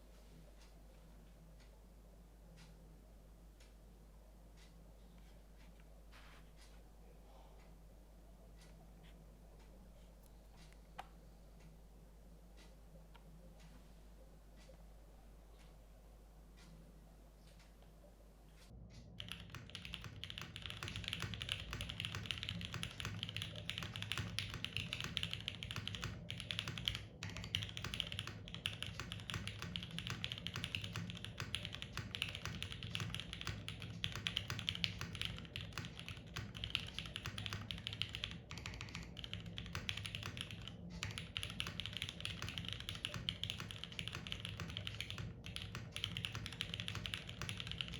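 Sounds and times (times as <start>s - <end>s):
mechanical keyboard typing: 19.1s - 47.9s.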